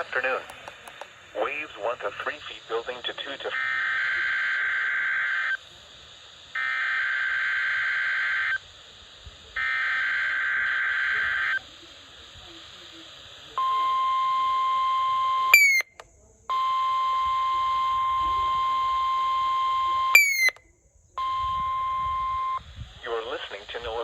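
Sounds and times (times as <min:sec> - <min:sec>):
data tone bursts: 0:06.6 - 0:08.6, 0:09.6 - 0:11.7, 0:13.6 - 0:20.6, 0:21.2 - 0:22.7
steady warning alarm tone: 0:13.6 - 0:20.6, 0:21.2 - 0:22.6.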